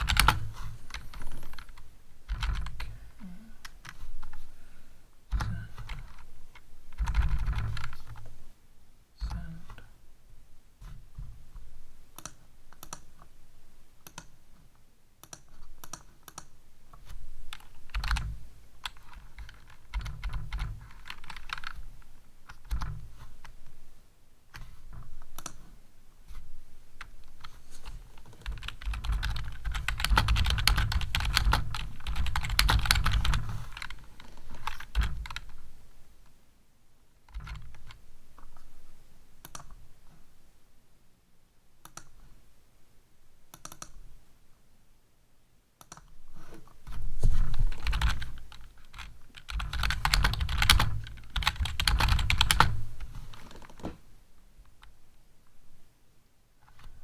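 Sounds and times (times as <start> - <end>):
computer keyboard typing: 0.0 - 3.0, 5.3 - 8.3, 12.2 - 13.2, 14.0 - 14.4, 15.2 - 23.6, 25.0 - 25.6, 27.0 - 35.7, 37.3 - 38.6, 39.4 - 39.8, 43.5 - 44.0, 47.2 - 53.8.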